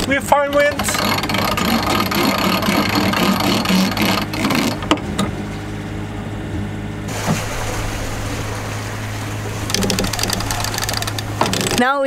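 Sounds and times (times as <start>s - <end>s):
boat engine humming: 0.0s - 12.0s
wind and water rushing: 7.0s - 12.0s.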